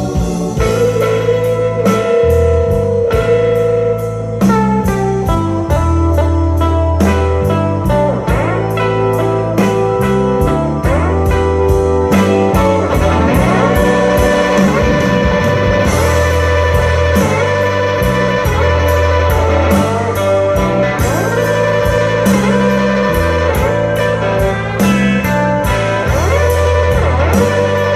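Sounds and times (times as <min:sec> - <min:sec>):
bass notes: 0:00.0 - 0:27.9
lead guitar bending notes: 0:00.0 - 0:27.9
drum beat: 0:09.6 - 0:27.9.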